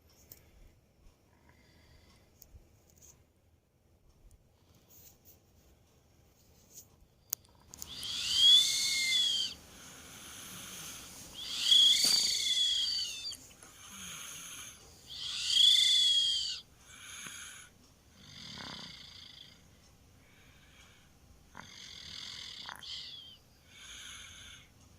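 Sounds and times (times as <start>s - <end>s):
child snoring with whistling breaths: 7.8s - 19.6s, 21.5s - 24.7s.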